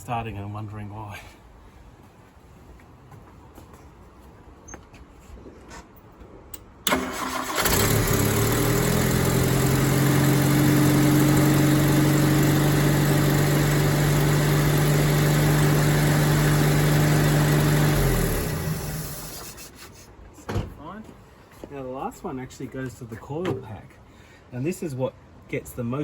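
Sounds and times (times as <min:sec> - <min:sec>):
car engine idling: 0:06.9 - 0:19.6
starter motor cranking: 0:06.9 - 0:19.6.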